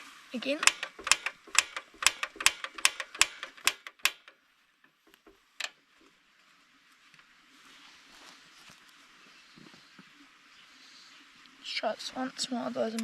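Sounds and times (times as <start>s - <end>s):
flint striker clicks: 0.6s - 5.7s.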